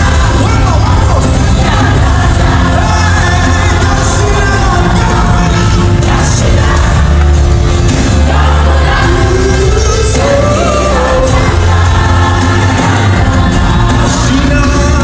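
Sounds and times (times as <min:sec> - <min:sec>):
voices singing: 0:00.0 - 0:15.0
worship band with heavy bass: 0:00.0 - 0:15.0.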